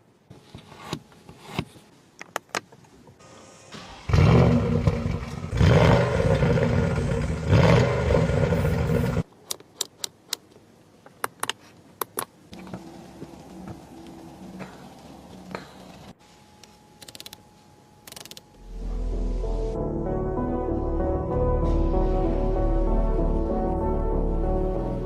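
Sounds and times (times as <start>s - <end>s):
car engine starting and revving: 3.2s - 9.2s
quiet steady hum: 9.2s - 19.7s.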